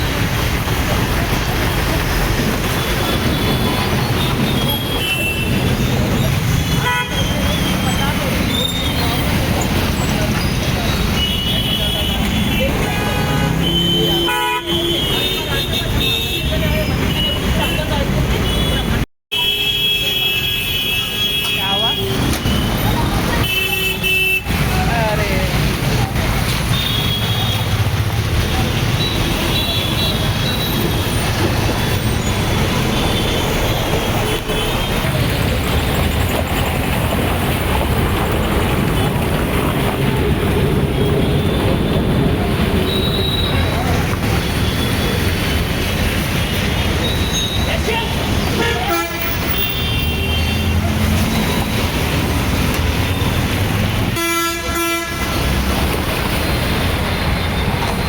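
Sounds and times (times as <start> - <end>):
traffic engines rumbling: 0.0 - 58.0
vehicle horn honking: 6.8 - 7.4, 11.2 - 16.6, 54.1 - 55.4.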